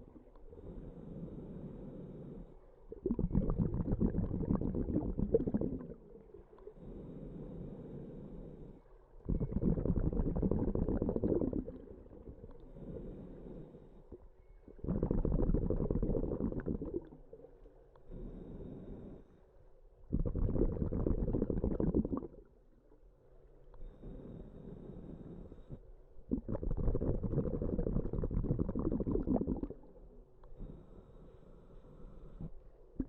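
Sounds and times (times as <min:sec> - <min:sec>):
bubbling underwater exhalations: 0:02.9 - 0:06.5, 0:09.3 - 0:12.5, 0:14.8 - 0:17.6, 0:20.1 - 0:22.6, 0:26.3 - 0:30.0
hissing inhalations: 0:18.0 - 0:19.5.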